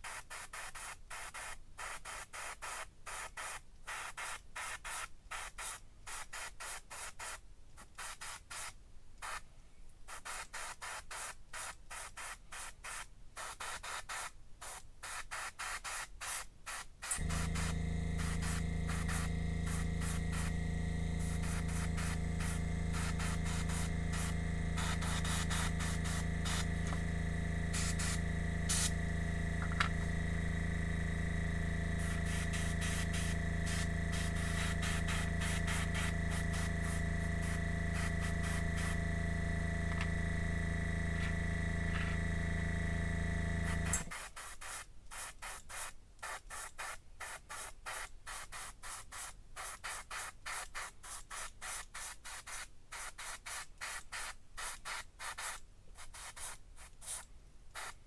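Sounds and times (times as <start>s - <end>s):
airbrush hissing: 17.1s - 44.1s
small compressor humming: 17.1s - 44.2s.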